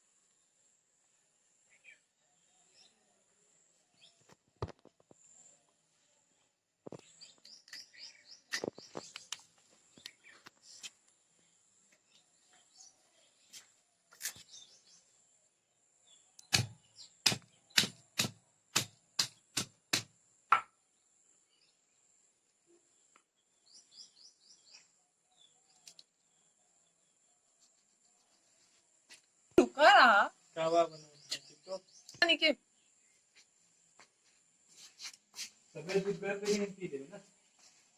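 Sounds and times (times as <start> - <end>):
bird chirps: 6.9 - 10.9, 22.8 - 28.6, 30.6 - 33.2
food being chopped by hand: 16.5 - 20.6.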